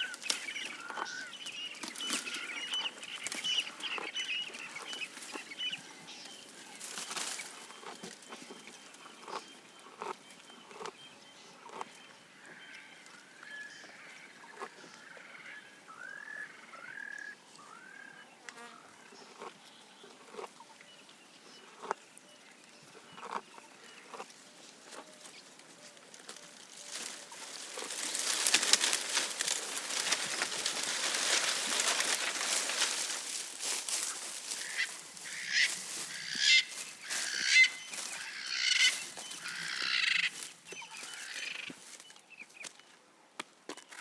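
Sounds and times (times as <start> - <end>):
leafy branches rustling: 0.0 - 3.9, 6.2 - 8.4, 24.7 - 42.2
harsh bird calls: 26.9 - 41.8.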